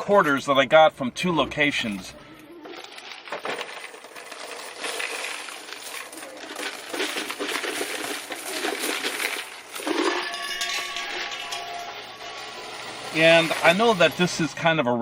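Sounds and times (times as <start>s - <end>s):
coins clinking and jingling: 9.8s - 13.6s.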